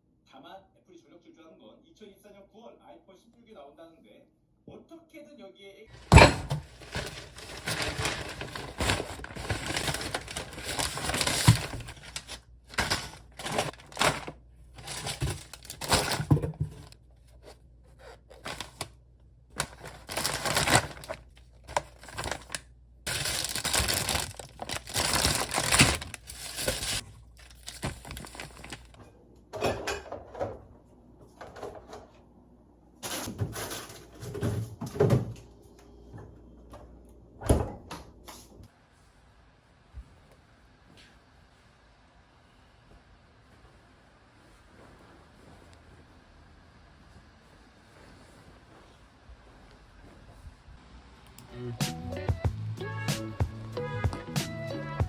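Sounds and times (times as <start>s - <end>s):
paper or plastic crinkling: 6.0s - 18.9s, 19.6s - 29.0s.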